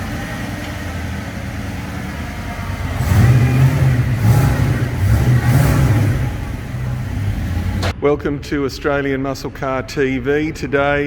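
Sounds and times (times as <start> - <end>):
car engine idling and revving: 0.0 - 8.0.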